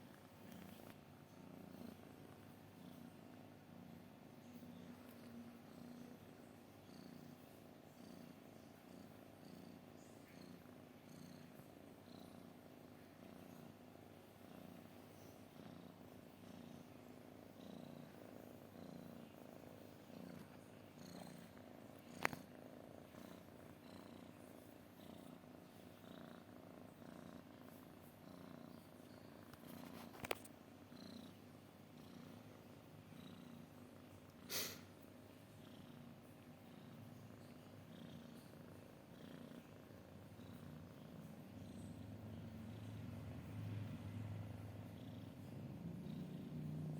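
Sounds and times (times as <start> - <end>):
cat purring: 0.0 - 46.9.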